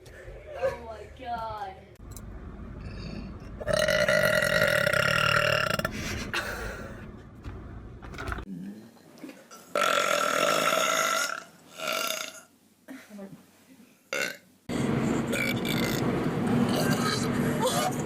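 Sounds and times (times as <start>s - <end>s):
person burping: 3.6s - 7.0s.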